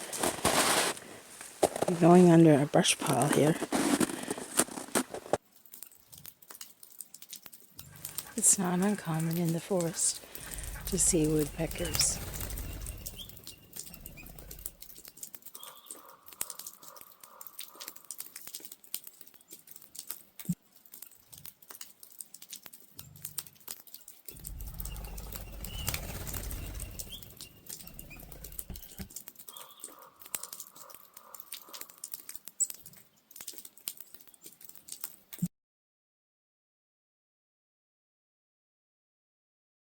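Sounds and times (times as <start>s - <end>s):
woodpecker tapping on tree: 7.3s - 19.1s, 23.2s - 33.0s
low rumble: 10.1s - 15.0s, 24.4s - 29.0s.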